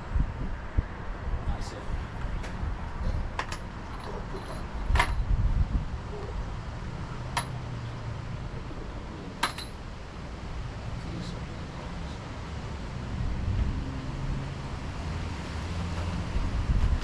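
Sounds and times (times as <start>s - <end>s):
low rumble of wind: 0.0s - 17.0s
metallic clinks: 9.4s - 9.8s.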